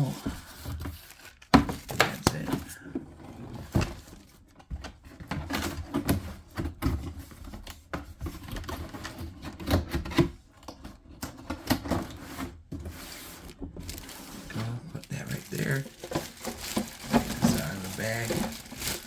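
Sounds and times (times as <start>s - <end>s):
packaging handling clicks and knocks: 0.6s - 2.8s, 13.4s - 19.0s.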